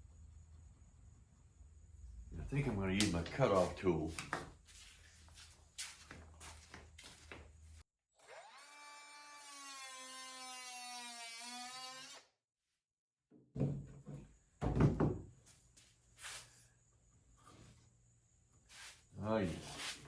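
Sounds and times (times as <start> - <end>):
loud knocks and clunks: 14.6 - 15.3.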